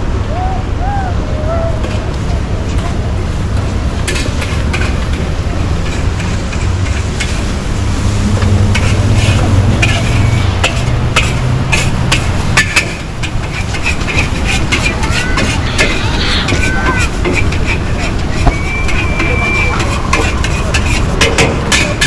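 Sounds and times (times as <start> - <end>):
noisy wash: 0.0 - 22.0
scattered clicks and clatter: 17.0 - 22.0.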